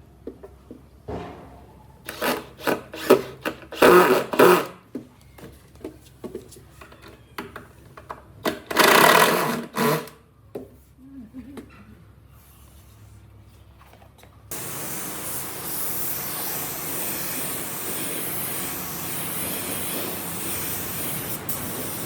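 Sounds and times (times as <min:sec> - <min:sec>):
rough rasping bursts: 0:08.7 - 0:10.1.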